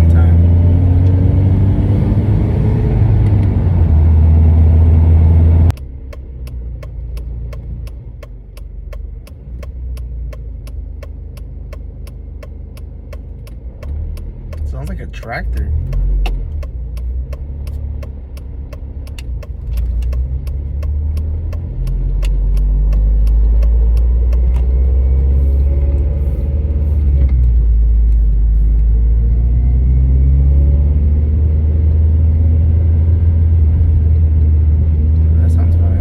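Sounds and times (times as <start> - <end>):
car engine rumbling: 0.0 - 36.0
sharp even clicking: 5.7 - 24.9.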